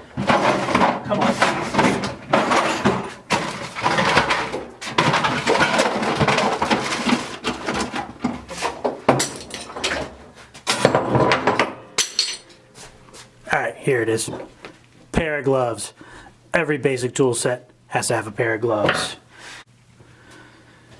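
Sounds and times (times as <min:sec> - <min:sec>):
tools clattering: 0:00.0 - 0:13.2.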